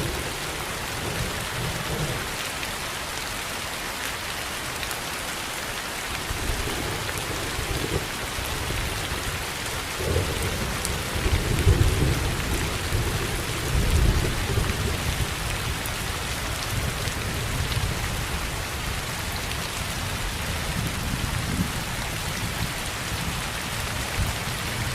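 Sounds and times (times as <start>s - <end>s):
steady rain falling: 0.0s - 24.9s.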